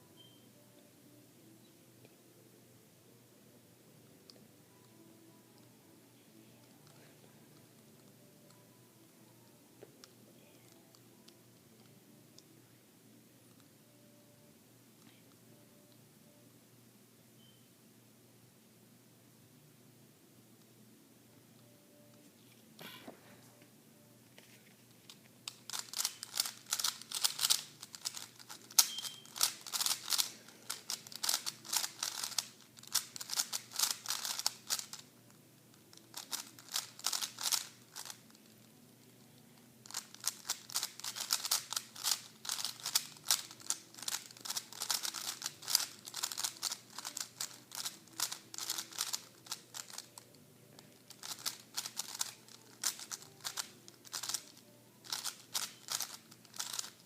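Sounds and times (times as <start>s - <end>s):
plastic puzzle cube clicking: 25.4s - 35.0s, 35.9s - 38.4s, 39.9s - 50.3s, 51.0s - 57.0s.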